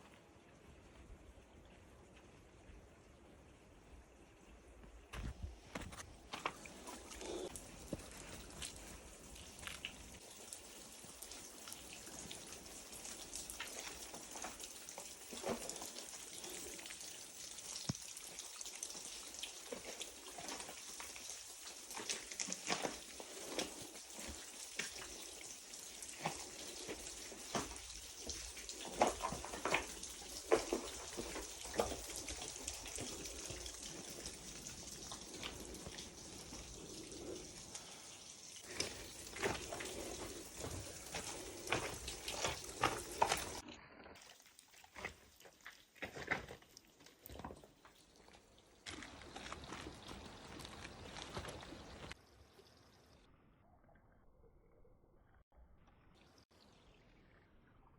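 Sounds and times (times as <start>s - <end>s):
water dripping and splashing: 4.7s - 53.2s
running water hiss: 6.3s - 43.6s.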